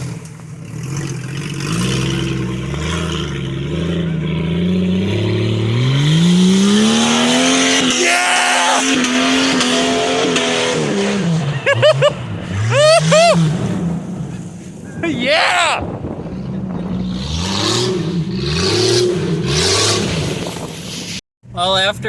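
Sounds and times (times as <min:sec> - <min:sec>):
truck engine revving: 0:00.0 - 0:15.2, 0:15.8 - 0:21.2
onlookers shouting: 0:07.8 - 0:09.1, 0:11.4 - 0:13.5, 0:14.9 - 0:15.9
hiss of spinning tyres: 0:20.0 - 0:21.2.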